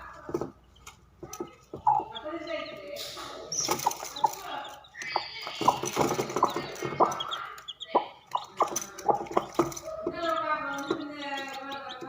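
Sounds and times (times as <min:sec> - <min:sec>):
chicken clucking: 0:00.0 - 0:12.0.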